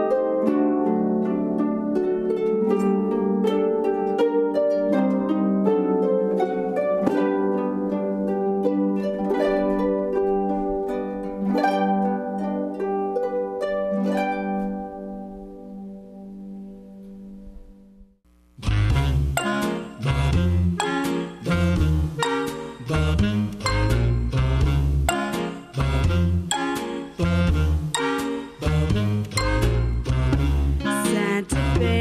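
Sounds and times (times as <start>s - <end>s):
solo harp playing: 0.0s - 17.7s.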